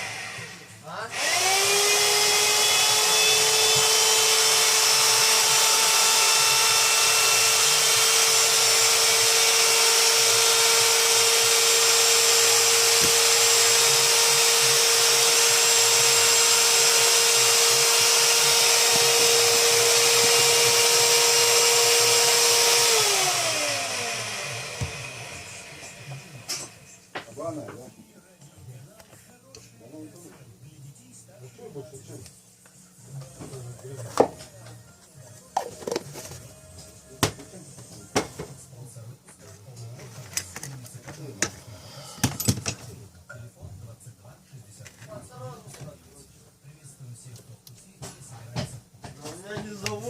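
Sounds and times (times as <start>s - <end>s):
cordless drill motor whine: 0.0s - 26.5s.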